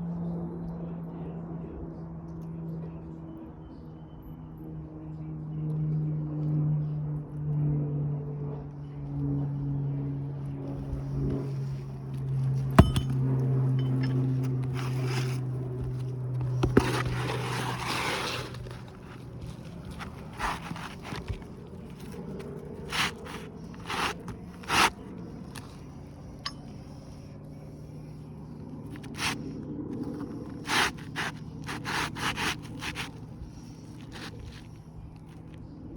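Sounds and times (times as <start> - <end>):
low hum: 8.4 - 31.8
hand tools scraping shingles: 12.5 - 13.2, 13.8 - 25.9, 28.9 - 33.3.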